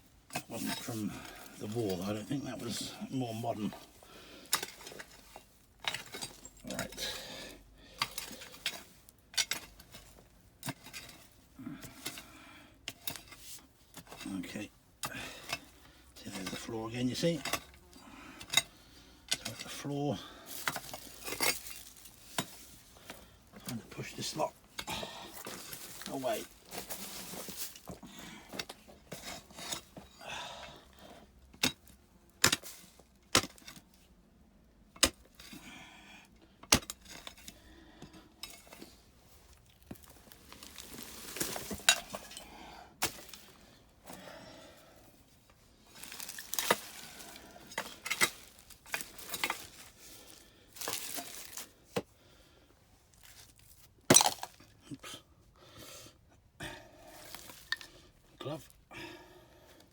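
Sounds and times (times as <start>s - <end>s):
rubble scraping across floor: 25.4s - 28.2s, 38.4s - 42.5s
knocks and clinks of glass and stone: 54.1s - 54.6s.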